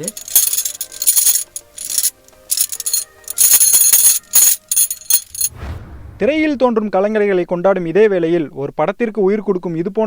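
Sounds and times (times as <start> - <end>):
metallic jingling: 0.0 - 5.5.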